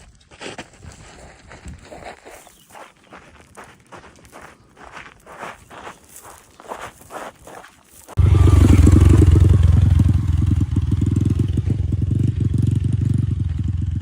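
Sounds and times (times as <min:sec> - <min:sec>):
footsteps: 0:00.0 - 0:08.2
small motorcycle engine running: 0:08.2 - 0:14.0.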